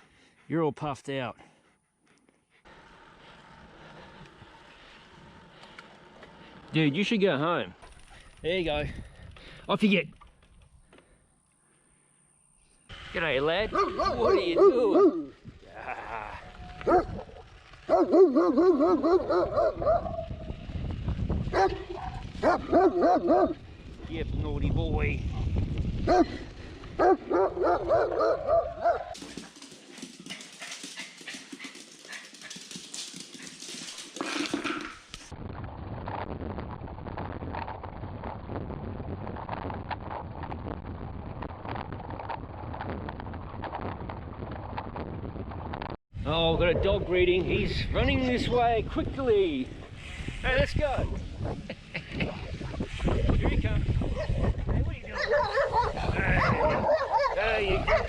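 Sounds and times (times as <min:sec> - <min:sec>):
wind and riding noise rumble: 0:02.7 - 0:11.2, 0:12.6 - 0:29.6, 0:34.3 - 0:58.0
dog barking: 0:13.7 - 0:15.3, 0:17.9 - 0:20.2, 0:21.5 - 0:23.6, 0:26.1 - 0:26.4, 0:27.0 - 0:29.2, 0:54.2 - 0:58.0
tyres crackling over gravel: 0:14.4 - 0:19.0.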